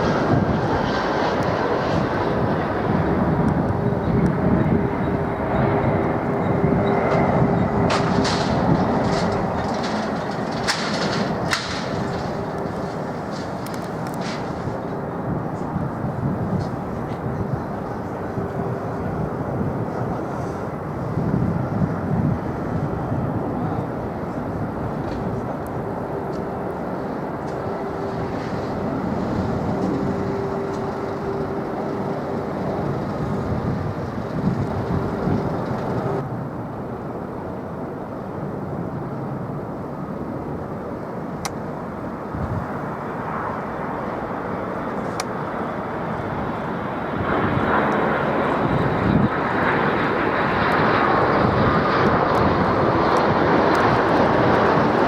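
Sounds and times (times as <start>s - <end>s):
held engine hum: 0.0s - 36.3s
jet engine rumble: 0.0s - 55.0s.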